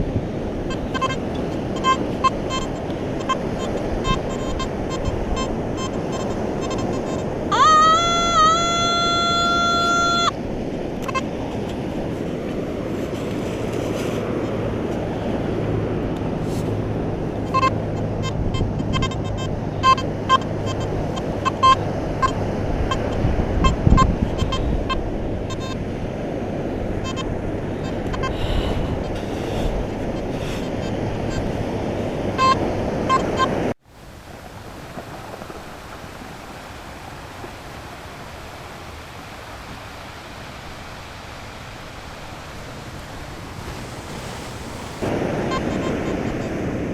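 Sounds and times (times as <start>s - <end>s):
surf and wind: 0.0s - 46.9s
metal detector beeps: 0.7s - 10.4s, 11.0s - 11.3s, 17.4s - 25.8s, 26.9s - 31.6s, 32.3s - 33.6s, 43.3s - 46.6s.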